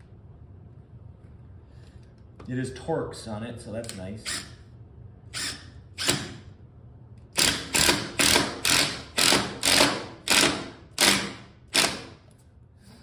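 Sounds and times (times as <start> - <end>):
drill driving screw into concrete: 5.4 - 6.4, 7.4 - 12.2.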